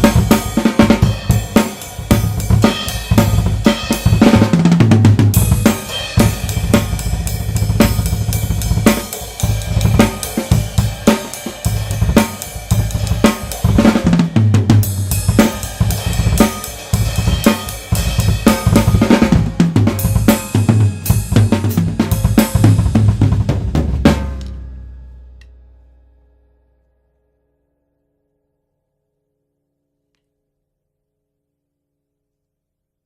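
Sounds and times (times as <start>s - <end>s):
drum kit playing: 0.0s - 25.7s
ringing cymbals: 15.0s - 19.0s.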